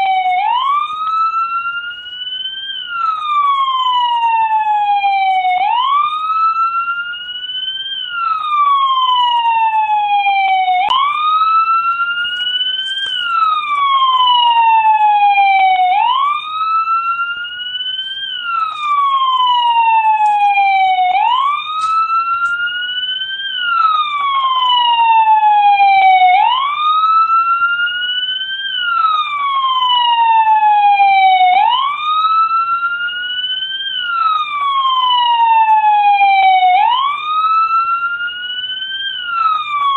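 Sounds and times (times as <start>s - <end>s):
police siren wailing: 0.0s - 39.9s.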